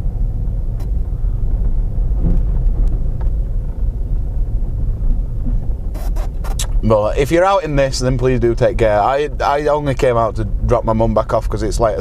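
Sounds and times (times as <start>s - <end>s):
car engine and road noise: 0.0s - 12.0s.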